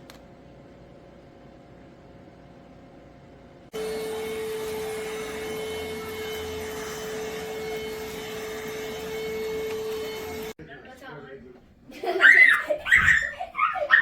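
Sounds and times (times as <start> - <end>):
stick vacuum motor whine: 3.7 - 10.6.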